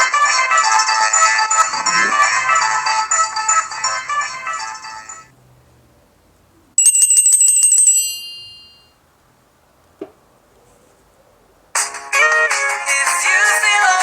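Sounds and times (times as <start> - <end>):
phone ringtone: 0.0 - 5.3, 6.8 - 8.9.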